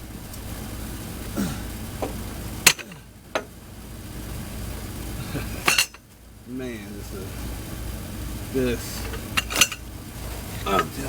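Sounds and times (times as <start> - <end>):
steady low hum: 0.0 - 11.0
tools clanking on metal: 2.0 - 3.6, 5.4 - 6.1, 8.8 - 11.0.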